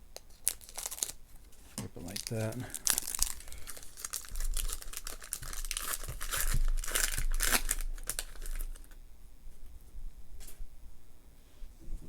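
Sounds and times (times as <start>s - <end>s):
plastic wrapper tearing: 0.2s - 1.2s, 2.0s - 9.0s.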